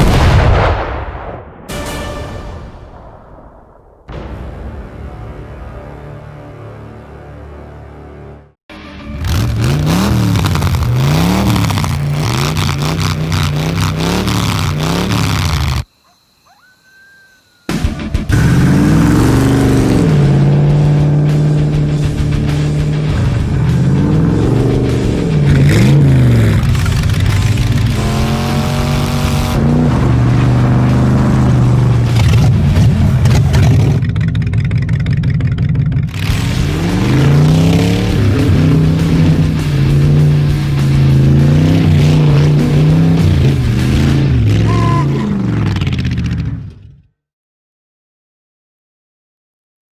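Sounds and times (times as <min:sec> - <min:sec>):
vehicle engine revving: 0:08.7 - 0:15.9, 0:17.7 - 0:46.9.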